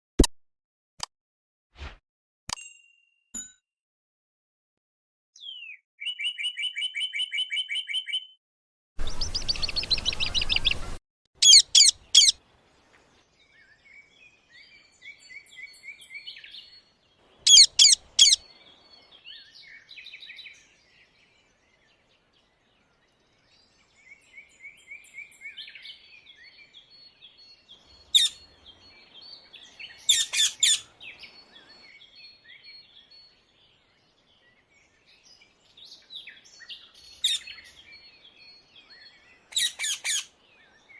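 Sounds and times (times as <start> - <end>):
parakeets chattering: 11.4 - 12.4, 17.5 - 18.4, 28.1 - 28.4, 30.1 - 30.9, 37.2 - 37.5, 39.6 - 40.3
parakeets screeching: 11.4 - 12.4, 17.5 - 18.4, 28.1 - 28.4, 30.1 - 30.9, 37.2 - 37.6, 39.5 - 40.3.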